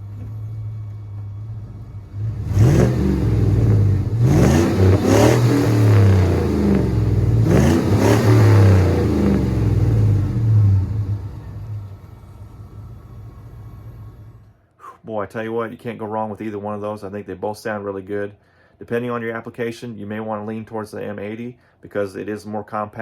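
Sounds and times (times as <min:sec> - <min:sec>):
truck engine exhaust revving: 0:00.0 - 0:15.0.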